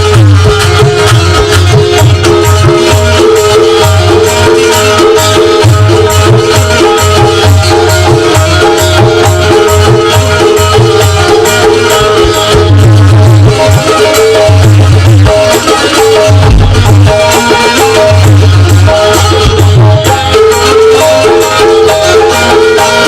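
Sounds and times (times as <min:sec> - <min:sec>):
fast rattling percussion: 0:00.0 - 0:23.0
low drum beat: 0:16.1 - 0:20.5.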